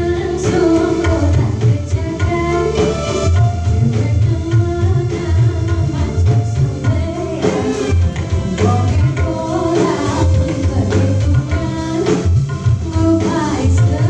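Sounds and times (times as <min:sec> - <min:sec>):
loud music over sound system: 0:00.0 - 0:14.0
person singing: 0:04.0 - 0:14.0.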